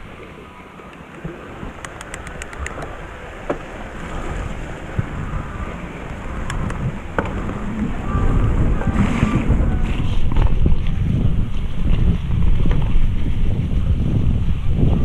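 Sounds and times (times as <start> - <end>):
wind buffeting microphone: 0.0 - 15.0
bike tyre rumble: 1.2 - 15.0
sharp ticks: 1.8 - 2.9.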